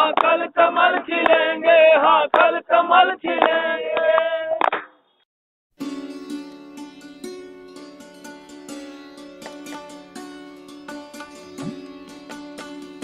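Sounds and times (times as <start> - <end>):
plucked string music: 5.8 - 13.0.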